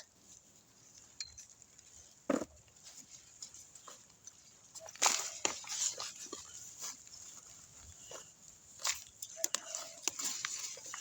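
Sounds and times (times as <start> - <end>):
vines rustling and tearing: 2.8 - 11.0.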